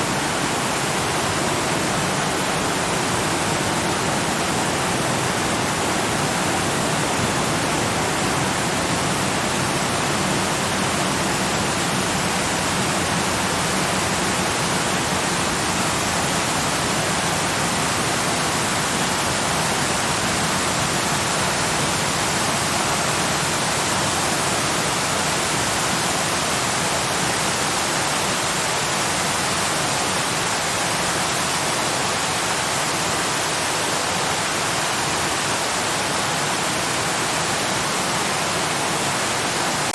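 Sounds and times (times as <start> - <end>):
rushing water: 0.0 - 39.9.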